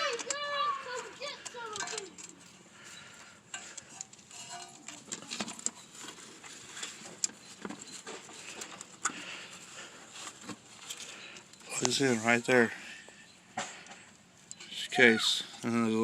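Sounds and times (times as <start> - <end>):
light clicks and knocks of handling: 0.0 - 12.4.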